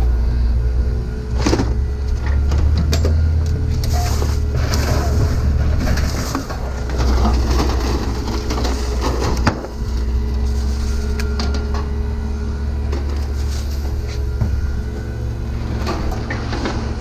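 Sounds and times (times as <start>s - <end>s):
road noise: 0.0s - 17.0s
vehicle engine rumble: 0.0s - 17.0s.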